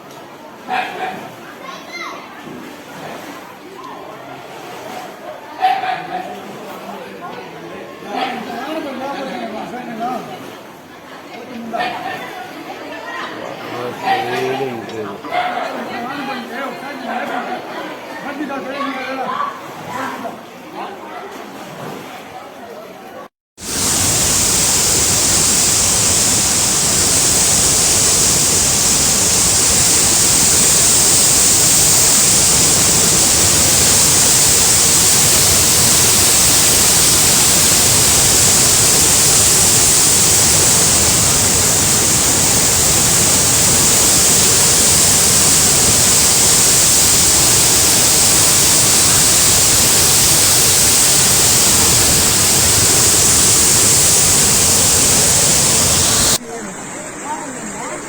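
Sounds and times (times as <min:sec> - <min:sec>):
floodwater rushing: 0:23.6 - 0:56.4.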